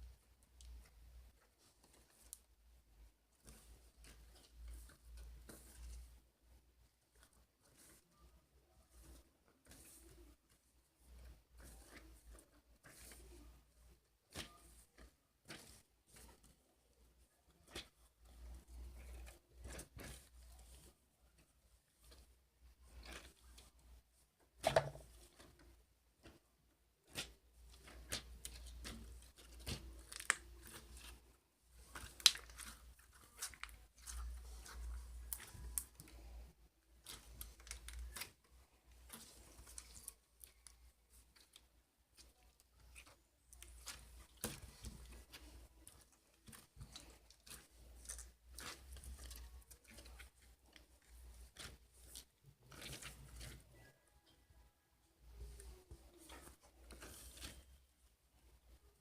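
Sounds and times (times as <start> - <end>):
slime crackling and popping: 27.0 - 31.2, 31.8 - 36.1.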